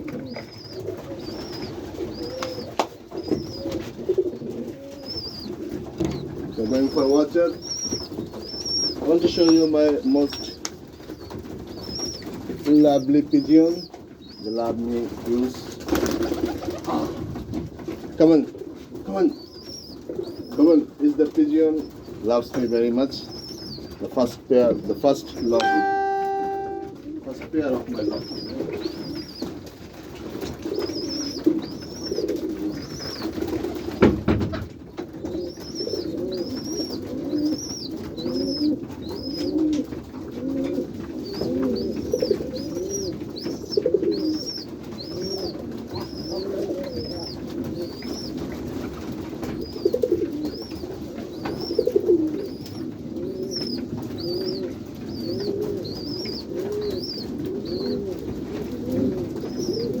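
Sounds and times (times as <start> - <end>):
pigeons cooing: 0.0 - 25.6, 27.1 - 34.1, 34.9 - 60.0
thin high chirp: 25.6 - 26.9
thump: 34.0 - 34.6.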